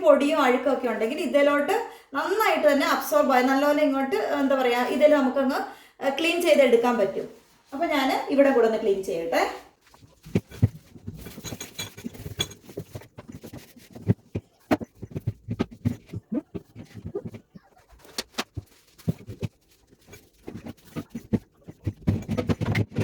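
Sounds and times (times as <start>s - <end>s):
knocks and rubbing on plastic: 9.8s - 23.0s.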